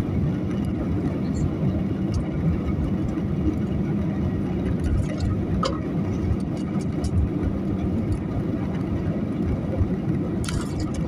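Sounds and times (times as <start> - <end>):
airliner engines rumbling: 0.0 - 11.0.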